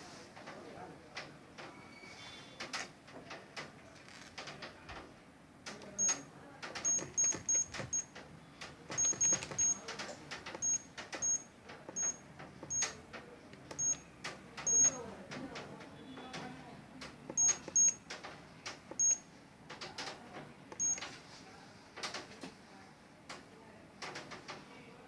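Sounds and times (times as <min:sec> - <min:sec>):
alarm keypad beeps: 0:06.8 - 0:08.1, 0:09.0 - 0:09.8, 0:10.6 - 0:13.0, 0:13.8 - 0:14.0, 0:14.6 - 0:15.0, 0:17.3 - 0:18.0, 0:18.9 - 0:19.2, 0:20.8 - 0:21.0
keypad button clicks: 0:06.8 - 0:08.1, 0:08.9 - 0:09.9, 0:10.5 - 0:13.0, 0:13.6 - 0:15.0, 0:17.0 - 0:18.0, 0:18.9 - 0:19.2, 0:20.7 - 0:21.1.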